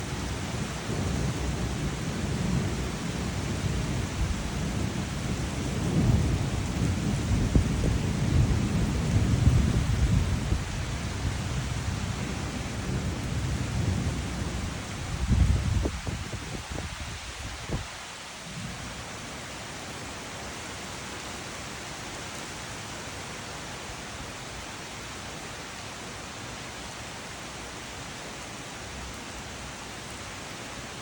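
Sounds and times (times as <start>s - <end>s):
rain: 0.0s - 31.0s
thunder rumbling: 0.9s - 17.8s.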